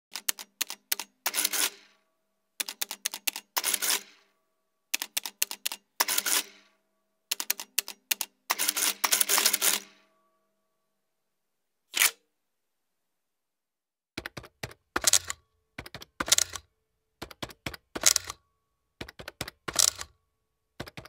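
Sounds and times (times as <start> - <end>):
typewriter keys clicking: 0.1 - 1.8, 2.6 - 4.1, 5.0 - 6.6, 7.3 - 9.9, 14.2 - 18.4, 19.0 - 20.2, 20.8 - 21.0.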